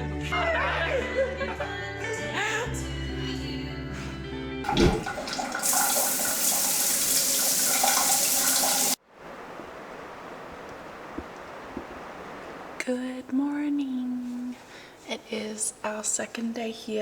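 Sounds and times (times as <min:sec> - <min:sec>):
water running hard: 0:04.7 - 0:09.0.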